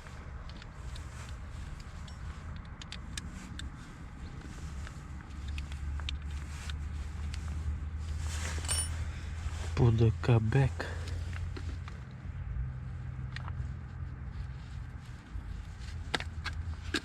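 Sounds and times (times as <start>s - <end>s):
steady low rumble: 0.0s - 17.0s
small clicks and taps of parts: 0.4s - 7.5s.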